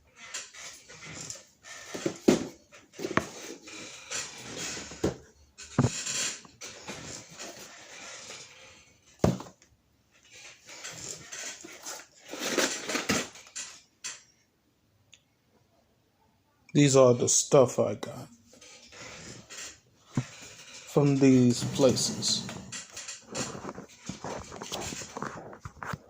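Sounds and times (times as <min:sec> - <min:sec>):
rustling and handling noise: 0:00.1 - 0:14.3, 0:18.4 - 0:26.0
objects clicking and knocking: 0:00.4 - 0:07.7.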